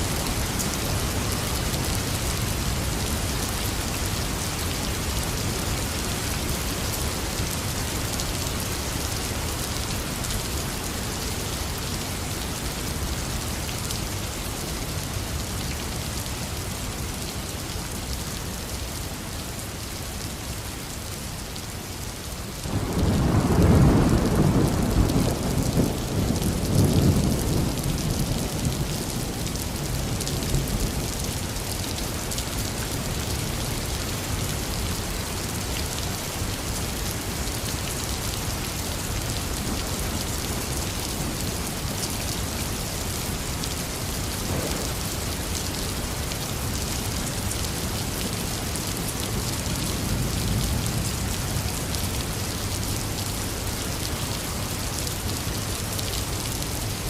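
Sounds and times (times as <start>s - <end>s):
heavy rain: 0.0s - 57.0s
thunder rolling: 44.4s - 45.0s.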